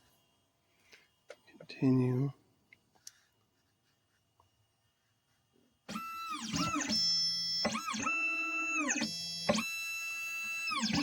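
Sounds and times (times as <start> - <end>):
stepper motors whining: 5.9 - 11.0.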